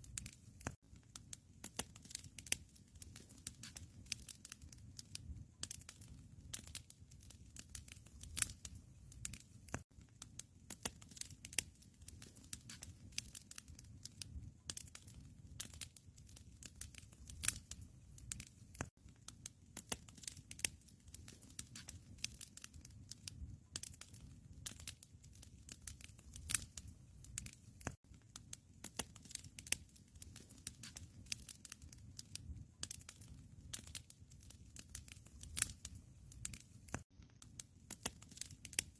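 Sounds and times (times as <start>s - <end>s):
wood fire crackling and popping: 0.0s - 38.9s.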